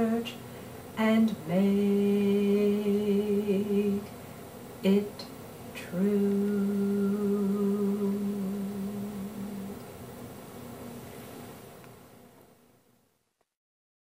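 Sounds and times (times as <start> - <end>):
woman singing low notes: 0.0 - 4.2, 4.8 - 9.9.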